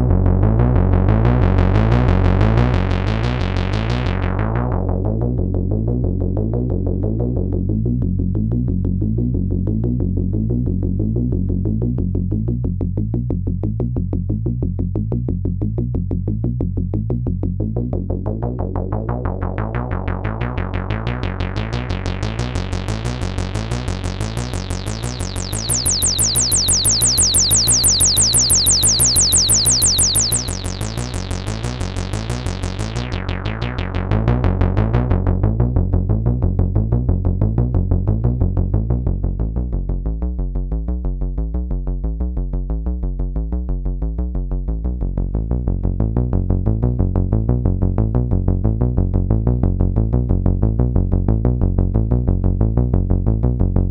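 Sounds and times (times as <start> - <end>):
analog synthesizer sequence: 20.9 - 35.5.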